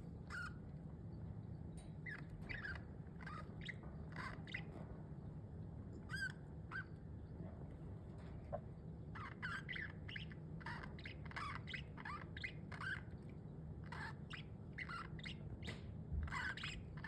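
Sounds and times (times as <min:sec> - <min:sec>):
low steady hum: 0:00.0 - 0:17.0
budgerigars chirping and squawking: 0:00.3 - 0:00.6, 0:02.0 - 0:04.8, 0:06.0 - 0:07.0, 0:09.1 - 0:17.0.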